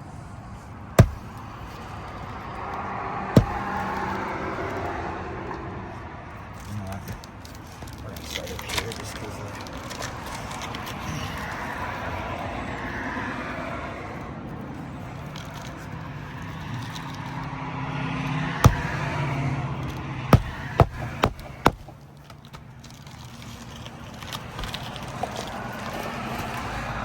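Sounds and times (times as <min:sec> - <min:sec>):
tool scraping shingles: 0:01.0 - 0:02.4, 0:03.4 - 0:04.2, 0:18.6 - 0:26.6.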